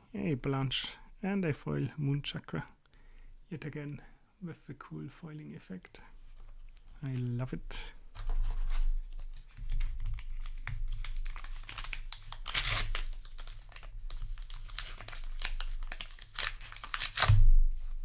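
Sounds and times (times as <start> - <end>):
foil wrappers crinkling: 8.2 - 18.0.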